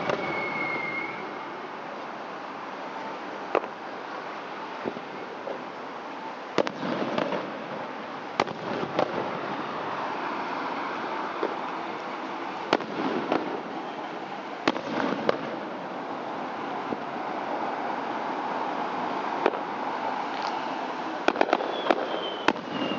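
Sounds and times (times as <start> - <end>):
fireworks bangs: 0.0 - 1.5, 6.6 - 18.4, 19.4 - 19.8, 21.2 - 22.9
fireworks crackling: 0.0 - 22.9
steady background hiss: 0.0 - 22.9.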